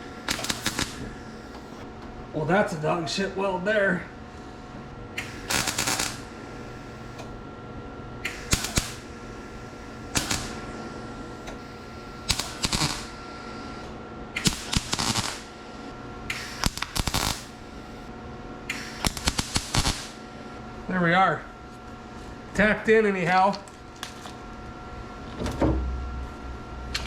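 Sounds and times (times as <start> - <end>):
welding crackling bursts: 0.0 - 1.8, 5.2 - 7.4, 8.2 - 10.6, 11.6 - 13.2, 14.4 - 15.6, 16.3 - 17.9, 18.7 - 20.2
steady hum: 0.0 - 27.0.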